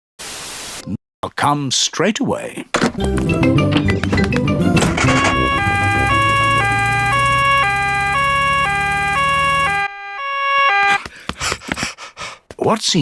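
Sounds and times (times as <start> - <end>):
cartoon two-tone siren: 4.8 - 11.0.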